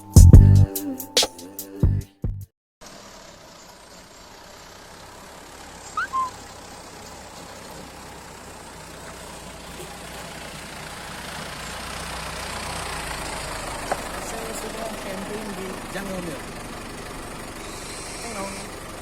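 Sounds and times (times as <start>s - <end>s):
short rising chirp: 5.9s - 6.4s
motor rumble and hiss: 13.9s - 19.0s.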